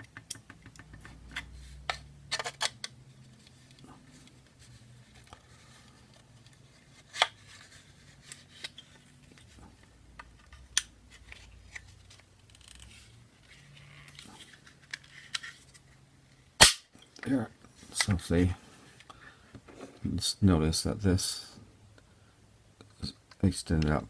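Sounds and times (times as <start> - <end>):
plastic parts clicking and snapping: 0.0 - 4.4.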